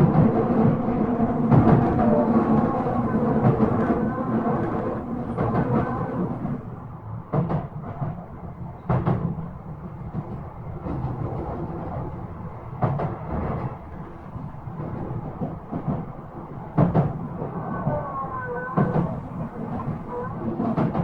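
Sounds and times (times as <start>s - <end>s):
wheels clacking over rail joints: 0.0s - 9.5s, 10.2s - 21.0s
train wheel rumble: 0.0s - 21.0s
electric train motor whine: 0.9s - 6.6s, 16.2s - 20.5s.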